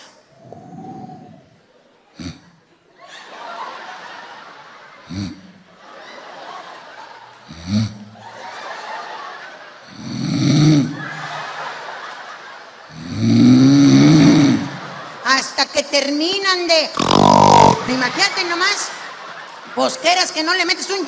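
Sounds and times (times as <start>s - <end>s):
woman imitating snoring: 0.0s - 1.6s, 5.1s - 5.5s, 7.5s - 8.1s, 9.9s - 11.0s, 12.9s - 14.8s, 17.0s - 18.1s
laughter: 2.9s - 13.3s, 14.6s - 15.8s, 17.5s - 21.0s.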